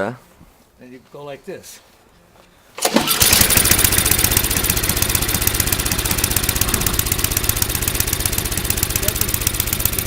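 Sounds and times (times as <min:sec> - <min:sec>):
snowblower engine starting: 0:02.8 - 0:10.0.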